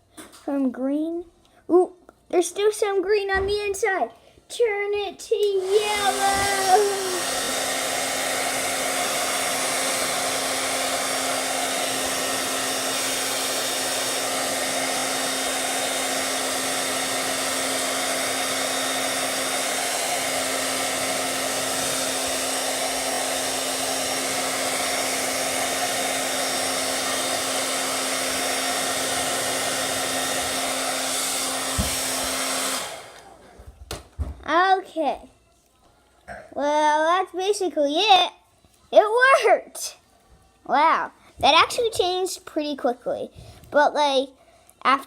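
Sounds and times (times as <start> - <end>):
hairdryer blowing: 5.4 - 34.1.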